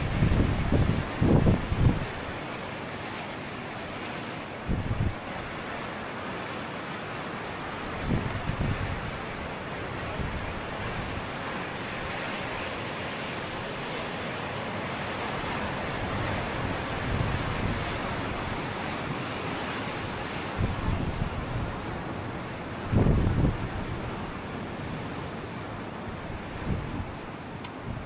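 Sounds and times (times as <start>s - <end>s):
wind buffeting microphone: 0.0s - 2.3s, 4.6s - 5.5s, 7.9s - 12.2s, 15.4s - 28.0s
sea surf rushing: 0.0s - 28.0s.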